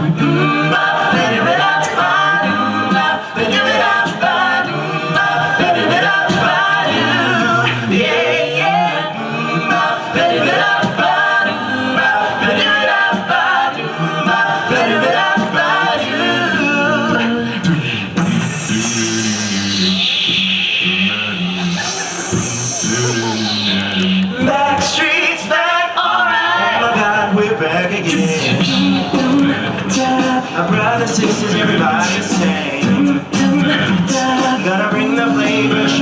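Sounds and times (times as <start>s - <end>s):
male a cappella group singing: 0.0s - 36.0s
sung bass line: 17.7s - 25.0s, 28.1s - 34.4s.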